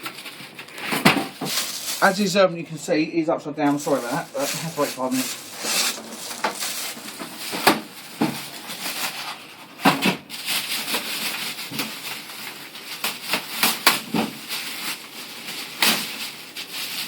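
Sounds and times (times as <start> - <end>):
cardboard rubbing and shuffling: 0.0 - 2.2, 3.7 - 12.0.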